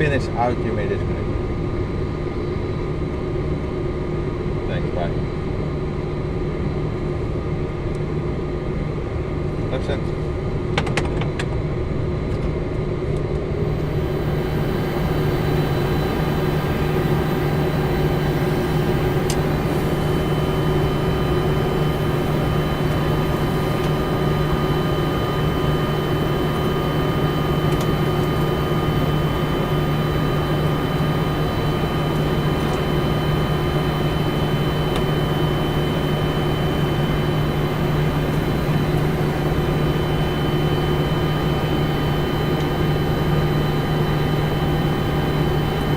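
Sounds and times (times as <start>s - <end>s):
jet engines idling: 0.0s - 45.9s
flight deck hum and rush: 4.5s - 45.9s
high steady whine: 13.1s - 45.9s.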